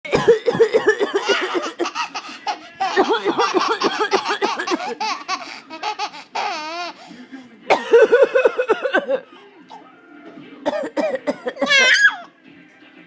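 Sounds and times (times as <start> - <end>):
baby laughing: 1.0 - 7.1, 11.6 - 12.3.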